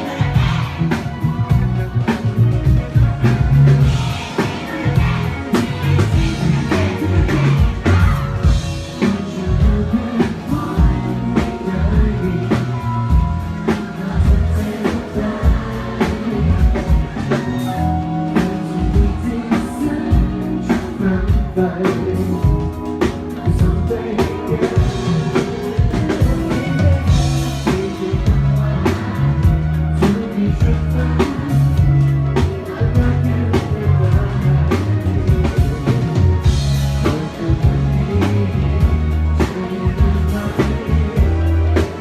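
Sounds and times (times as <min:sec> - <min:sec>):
band with drums and guitar: 0:00.0 - 0:42.0
person singing: 0:00.0 - 0:42.0.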